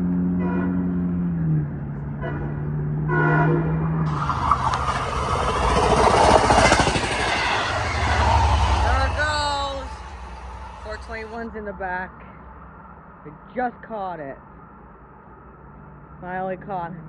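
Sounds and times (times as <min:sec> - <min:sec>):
diesel train horn tone: 0:00.3 - 0:01.0, 0:02.1 - 0:03.9
train cars rumbling past: 0:04.0 - 0:11.4.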